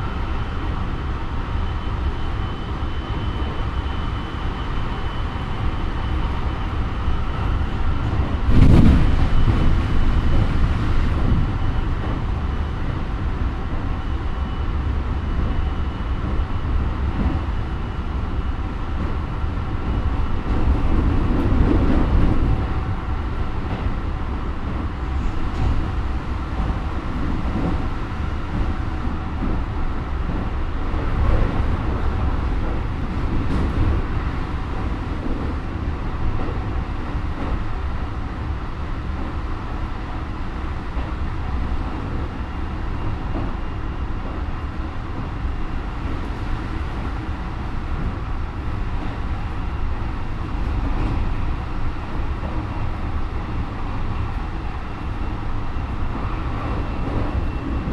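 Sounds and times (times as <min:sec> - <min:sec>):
wheel and rail rumble: 0:00.0 - 0:57.9.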